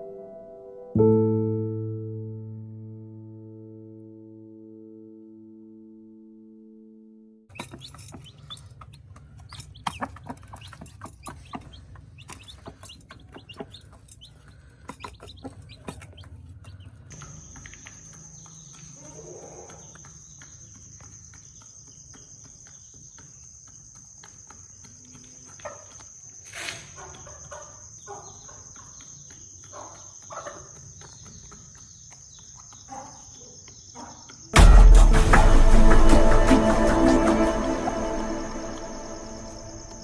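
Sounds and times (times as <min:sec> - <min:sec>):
chickens clucking: 0:07.5 - 0:20.7, 0:26.8 - 0:34.5
high insect drone: 0:17.1 - 0:40.0.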